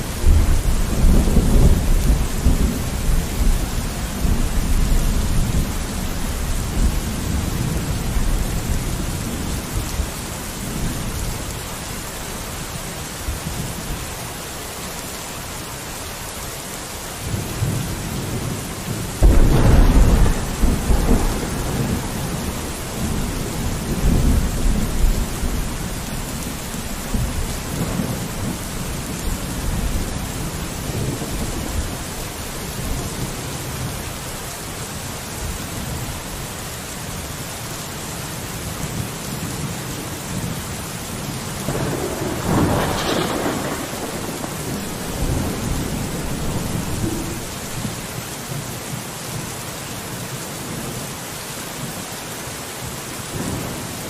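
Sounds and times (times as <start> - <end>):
steady rain: 0.0 - 54.0
thunder rumbling: 0.1 - 11.5, 17.3 - 34.0, 41.6 - 48.1.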